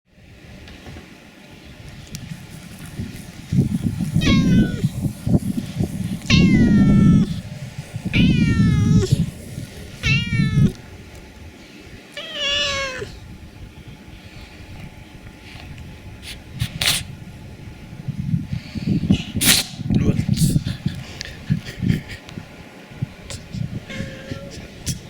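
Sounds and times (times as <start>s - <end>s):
low rough rumble: 1.6s - 25.0s
cat meowing: 4.0s - 5.0s, 6.2s - 7.5s, 8.1s - 9.3s, 10.0s - 10.8s, 12.2s - 13.2s, 23.7s - 24.6s.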